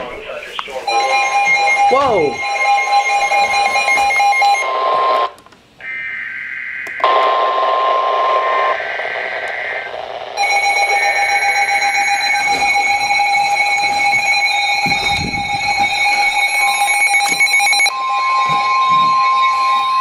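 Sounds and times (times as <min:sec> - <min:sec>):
digital data tones: 0:00.0 - 0:04.8, 0:05.8 - 0:20.0
two-tone attention signal: 0:00.8 - 0:04.8, 0:10.4 - 0:20.0.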